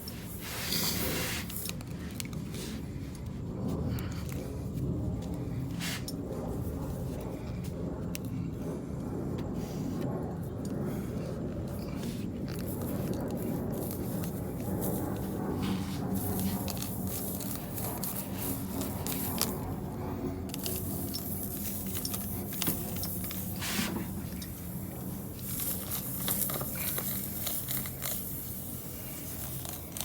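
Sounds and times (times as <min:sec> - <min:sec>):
metal scraping against rubber: 0:00.0 - 0:01.8.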